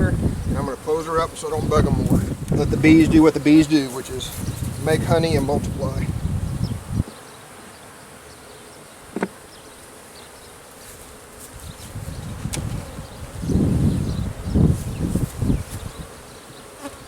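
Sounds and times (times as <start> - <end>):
honeybees buzzing: 0.0 - 17.0
sharp click: 12.5 - 12.7.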